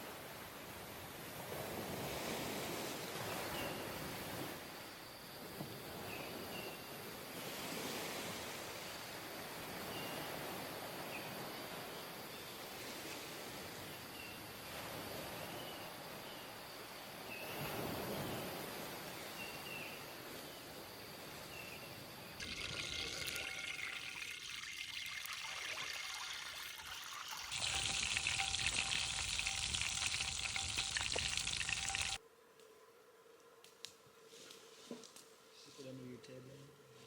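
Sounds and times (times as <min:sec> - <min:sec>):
rushing hissing water: 0:22.4 - 0:32.2.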